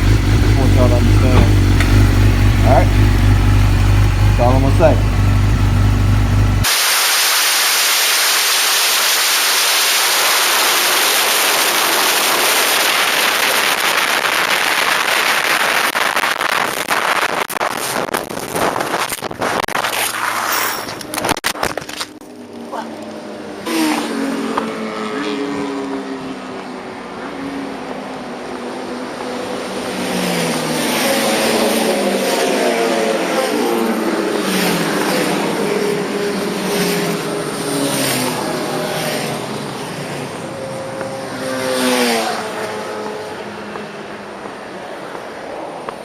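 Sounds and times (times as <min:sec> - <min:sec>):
motorcycle engine accelerating: 0:00.0 - 0:06.7.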